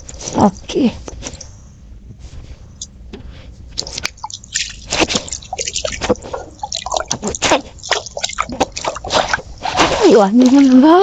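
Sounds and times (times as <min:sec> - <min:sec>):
water dripping and splashing: 0:03.7 - 0:11.0.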